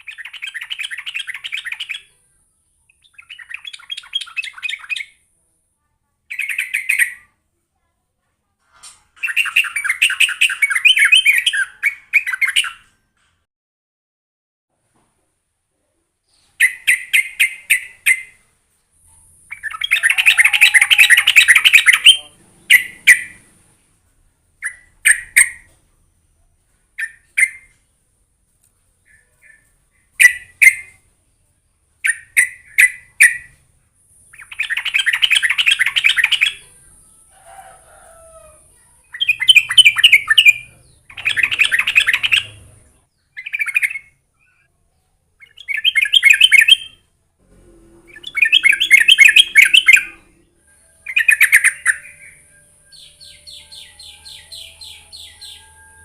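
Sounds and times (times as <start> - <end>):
bird chirping and warbling: 0.0 - 5.2, 6.3 - 7.3, 8.9 - 13.0, 16.3 - 18.4, 19.1 - 23.7, 24.6 - 25.8, 27.0 - 27.8, 29.0 - 31.0, 32.0 - 33.6, 34.2 - 44.7, 45.4 - 56.0.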